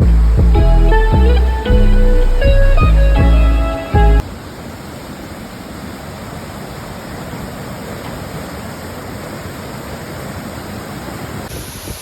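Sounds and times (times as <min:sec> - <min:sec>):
waterfall roaring: 0:04.2 - 0:12.0.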